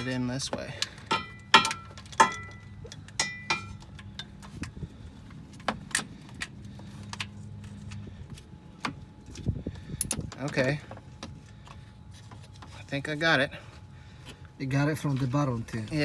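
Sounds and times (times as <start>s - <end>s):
hand tools clinking on metal: 0.0s - 4.4s
low steady hum: 0.0s - 16.0s.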